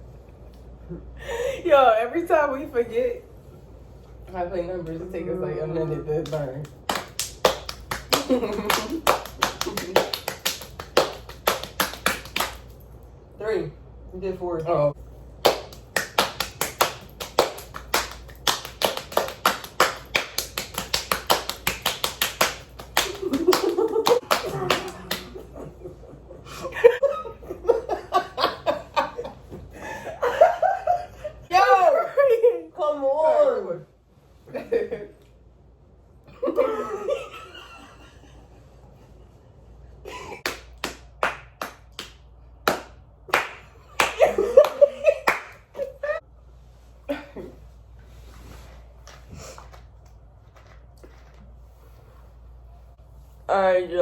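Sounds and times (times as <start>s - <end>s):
hand claps and slaps: 6.2s - 12.8s, 15.4s - 25.6s, 40.1s - 45.9s.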